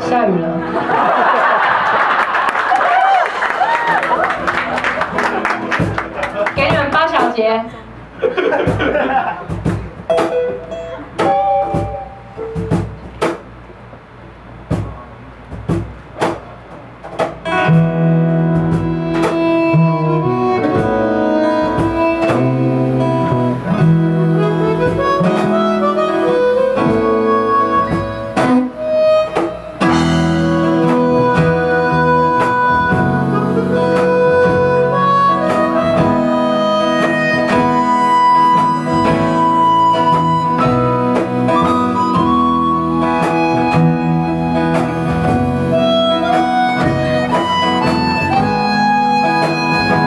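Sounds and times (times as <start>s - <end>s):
strummed guitar chords: 4.1s - 13.6s, 14.5s - 50.0s
sustained melody notes: 17.5s - 50.0s.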